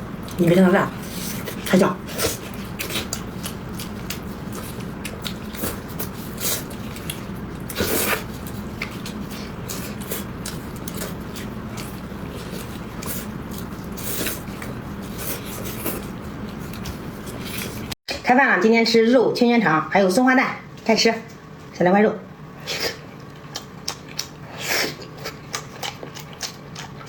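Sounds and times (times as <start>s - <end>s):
chewing wet smacks and clicks: 1.5s - 14.8s, 23.2s - 27.0s.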